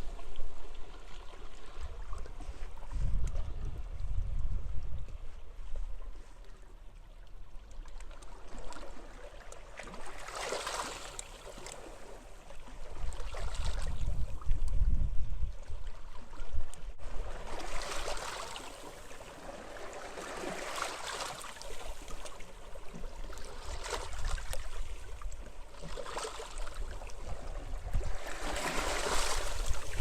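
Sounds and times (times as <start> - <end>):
wind: 0.0 - 30.0
waves breaking on beach: 9.8 - 14.0, 17.0 - 30.0.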